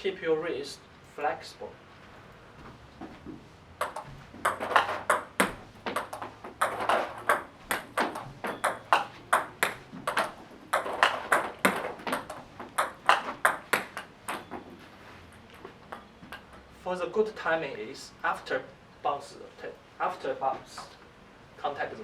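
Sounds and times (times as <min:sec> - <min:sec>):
table tennis ball clicking: 0:03.8 - 0:14.6.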